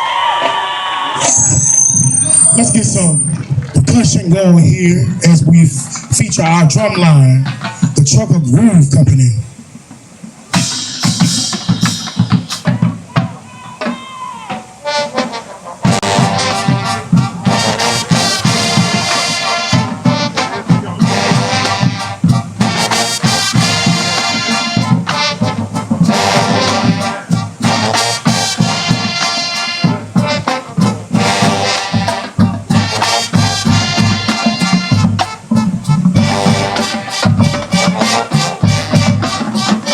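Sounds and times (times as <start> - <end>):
drum strokes: 0.0 - 8.6, 9.5 - 39.9
marching band playing loudly: 10.2 - 39.9.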